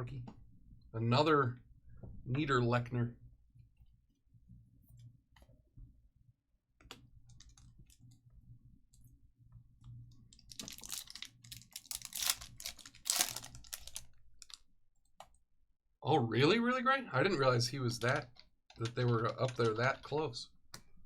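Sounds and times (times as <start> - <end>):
card packs rustling and crinkling: 10.3 - 14.6
trading cards clicking and tapping: 18.0 - 20.2.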